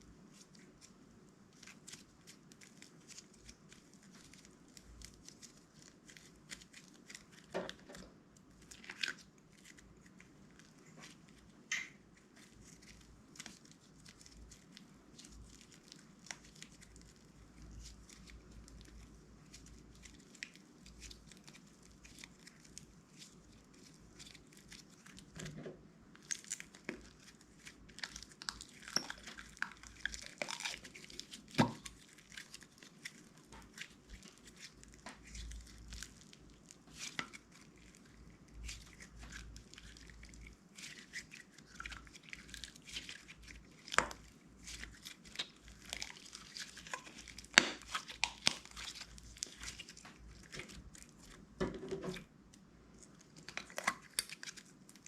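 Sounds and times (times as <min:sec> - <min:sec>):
sticky slime crackles and pops: 0:00.3 - 0:25.5, 0:26.1 - 0:51.6, 0:52.2 - 0:55.0
slime tearing: 0:26.2 - 0:51.5, 0:53.0 - 0:55.0.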